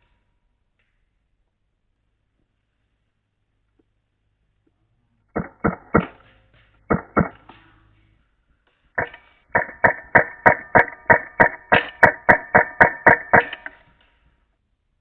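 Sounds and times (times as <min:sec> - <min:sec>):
pitched percussive hits: 0:06.9 - 0:07.5, 0:09.0 - 0:13.7.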